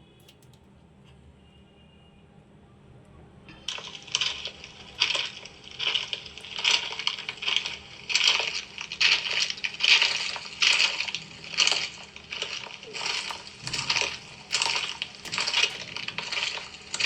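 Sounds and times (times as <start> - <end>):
chalk crunching: 3.7 - 17.0.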